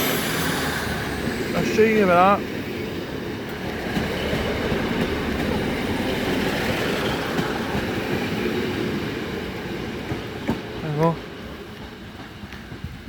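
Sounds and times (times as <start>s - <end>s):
diesel train engines running: 0.0s - 13.0s
wheel and rail noise: 0.0s - 13.0s.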